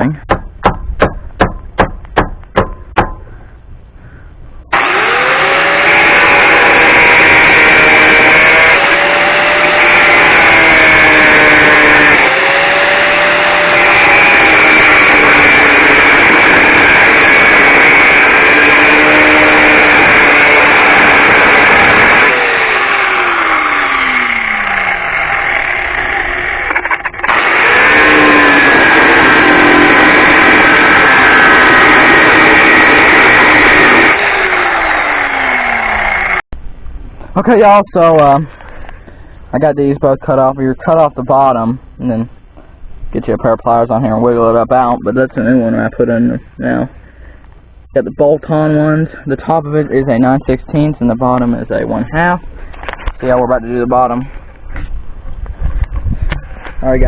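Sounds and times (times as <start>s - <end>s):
sharp knocks: 0.3s - 3.3s
power tool cutting metal: 4.7s - 36.5s.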